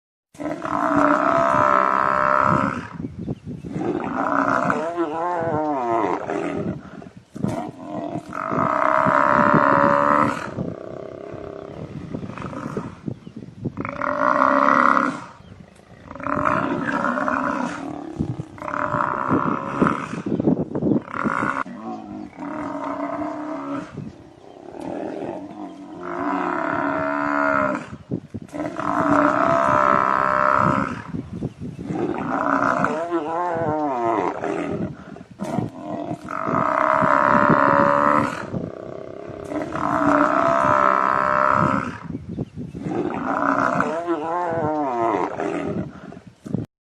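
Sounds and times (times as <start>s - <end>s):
buffalo bellowing: 3.7s - 13.1s, 13.8s - 20.4s, 21.0s - 31.2s, 31.8s - 42.1s, 42.8s - 46.2s.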